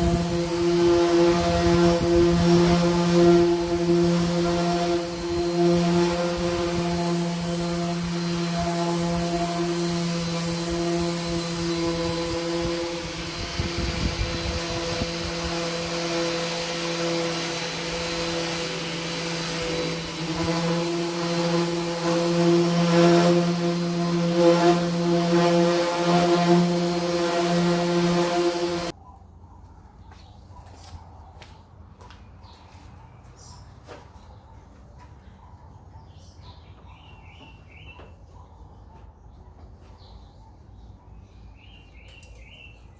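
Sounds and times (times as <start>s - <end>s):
power tool motor whining: 0.0s - 28.9s.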